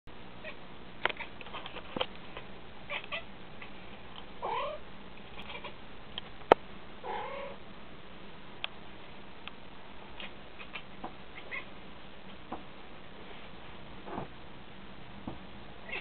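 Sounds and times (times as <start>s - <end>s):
cat chattering: 5.4s - 5.8s, 10.2s - 11.7s
cat chirping calls: 10.2s - 11.7s.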